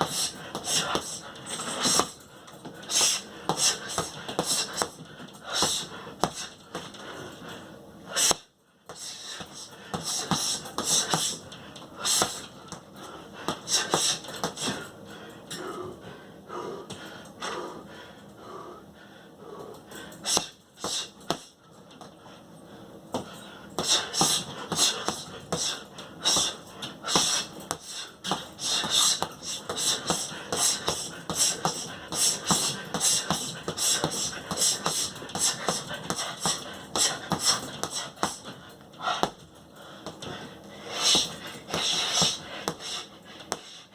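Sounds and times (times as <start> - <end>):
sharp hissed exhale: 19.5 - 21.2, 40.8 - 43.9.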